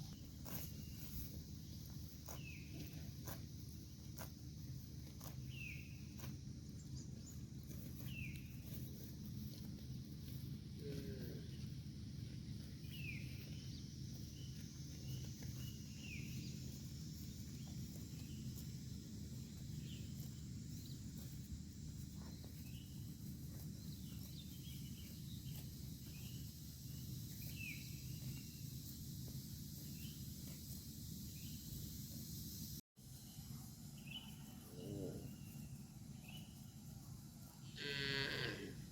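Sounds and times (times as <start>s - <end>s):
cow chewing grass: 0.0s - 31.6s
small birds chirping: 0.0s - 38.7s.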